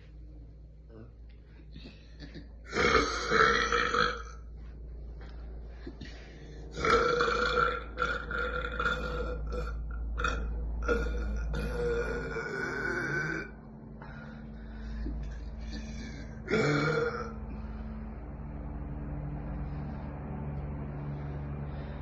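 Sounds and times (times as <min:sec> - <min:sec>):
person burping loudly: 0:02.2 - 0:04.4, 0:06.7 - 0:13.5, 0:15.7 - 0:17.4.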